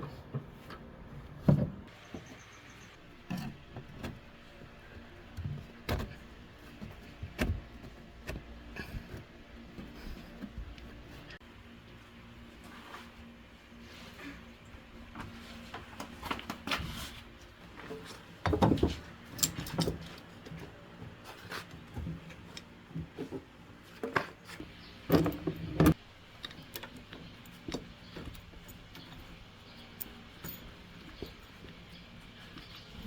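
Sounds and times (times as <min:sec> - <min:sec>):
tools and machine parts clattering: 0:17.9 - 0:20.6, 0:23.9 - 0:33.0.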